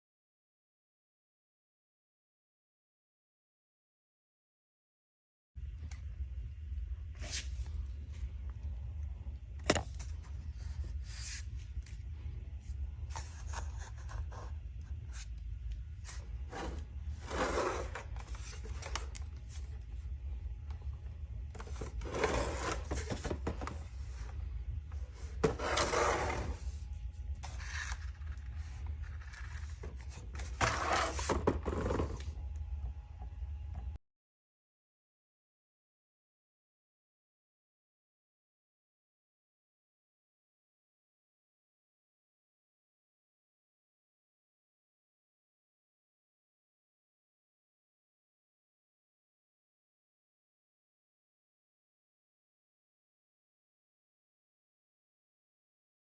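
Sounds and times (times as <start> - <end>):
steady low hum: 5.6 - 34.0
scraping and rubbing of objects: 16.0 - 19.9, 21.6 - 32.3.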